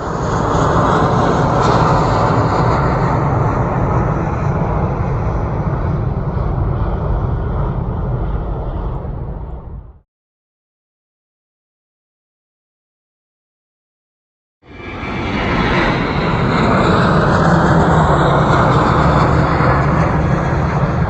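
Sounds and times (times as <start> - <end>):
jet airliner engines roaring: 0.0 - 10.0, 14.6 - 21.0.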